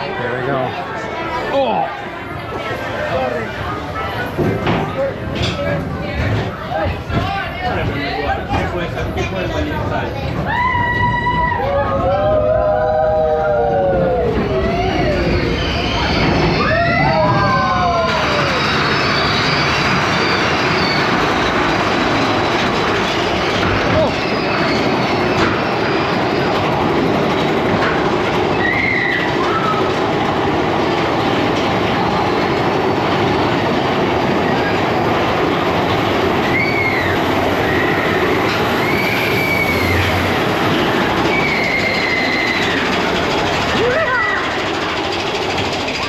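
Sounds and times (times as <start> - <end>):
roller coaster rattling and rumbling: 0.0 - 46.0
wheel squeals: 14.0 - 46.0.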